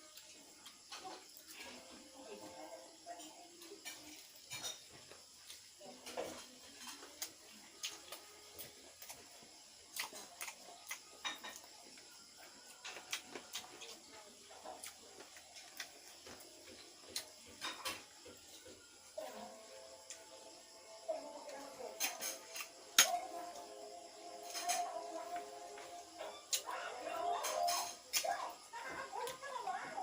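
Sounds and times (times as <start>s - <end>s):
mouth clicks and chewing: 9.9s - 11.1s.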